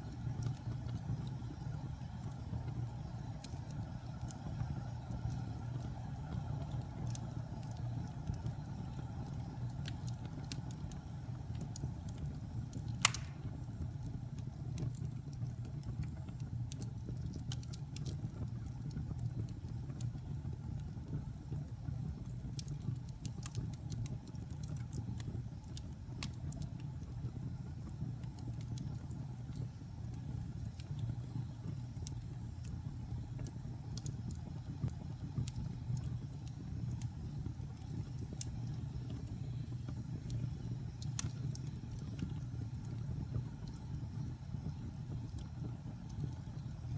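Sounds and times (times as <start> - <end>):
fire crackling: 0.0 - 46.9
wood fire rumbling: 0.0 - 46.9
sharp fire pop: 12.9 - 13.8.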